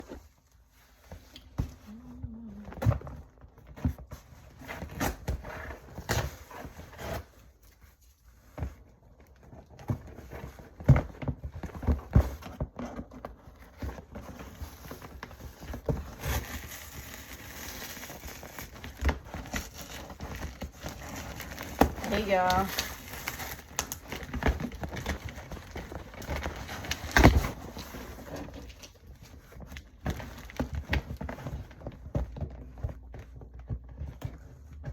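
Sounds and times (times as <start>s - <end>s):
rustling: 0.0s - 34.9s
knocks and clatter of handling: 8.4s - 34.9s.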